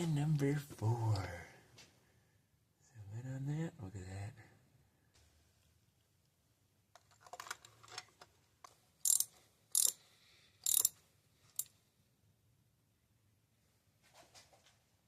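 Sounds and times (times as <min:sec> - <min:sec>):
tools rattling and clicking: 0:07.0 - 0:10.0, 0:10.6 - 0:11.7.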